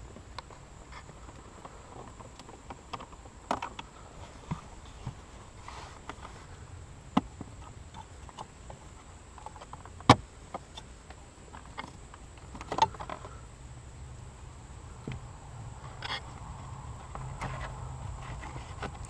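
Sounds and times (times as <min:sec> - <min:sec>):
low steady hum: 0:00.0 - 0:19.0
clicks and knocks of car parts: 0:01.3 - 0:03.9, 0:09.4 - 0:13.4.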